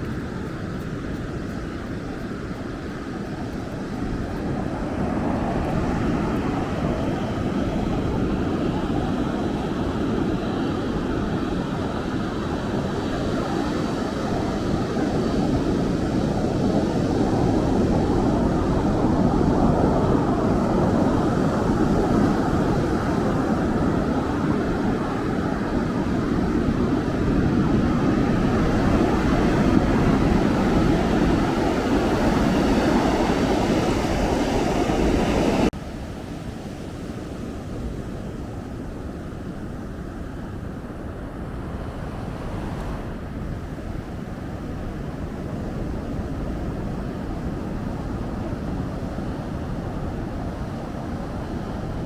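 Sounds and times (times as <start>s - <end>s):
wind on microphone: 0.0s - 52.0s
ocean surf breaking: 19.9s - 38.3s, 38.9s - 52.0s.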